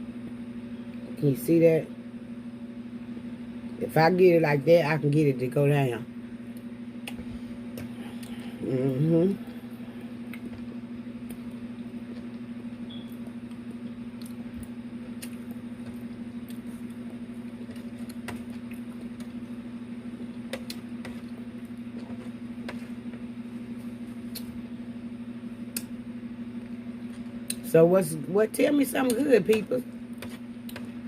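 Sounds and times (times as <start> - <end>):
steady low hum: 0.0 - 31.0
person chewing food: 9.8 - 19.5, 24.2 - 24.6.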